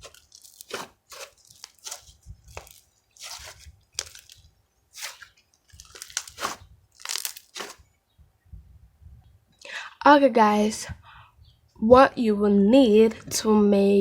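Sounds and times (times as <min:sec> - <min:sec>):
short rustling sounds: 0:00.0 - 0:07.9.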